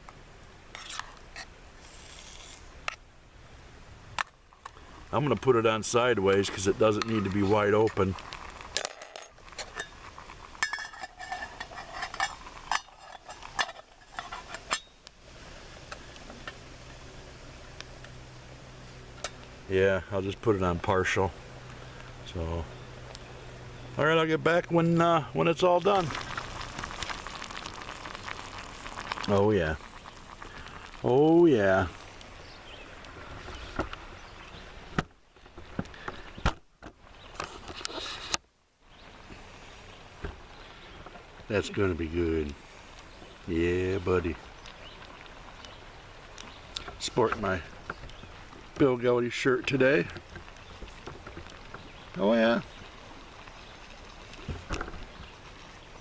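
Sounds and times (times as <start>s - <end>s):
food sizzling in a metal cup: 0.7s - 3.0s, 6.3s - 19.6s, 25.4s - 34.4s
sharp pops and ticks: 4.1s - 5.6s, 6.2s - 15.2s, 15.8s - 16.7s, 17.7s - 18.2s, 19.1s - 19.6s, 21.4s - 23.4s, 24.5s - 34.2s, 40.2s - 56.0s
metal lid clinking and scraping: 8.8s - 15.0s.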